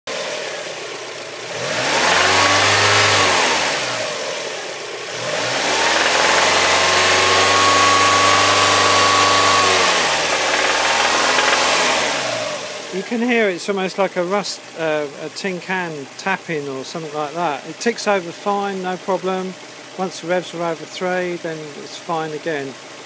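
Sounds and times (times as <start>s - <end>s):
car engine revving: 0.1s - 13.1s
engine tinny clatter: 5.2s - 13.1s.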